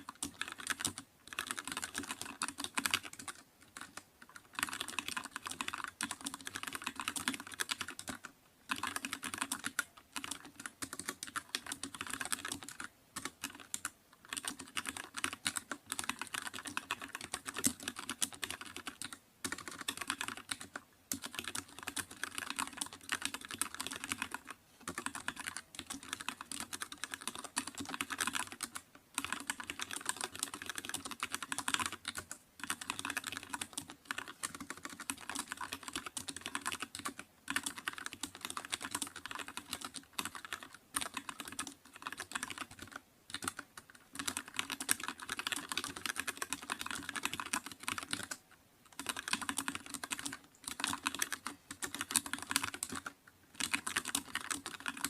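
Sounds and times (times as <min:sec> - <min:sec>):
typing on computer keyboard: 0:00.0 - 0:55.0.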